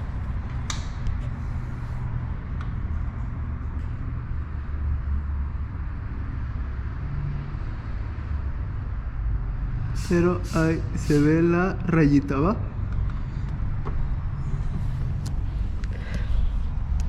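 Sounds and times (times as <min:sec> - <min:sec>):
vehicle noise rumble: 0:00.0 - 0:17.0.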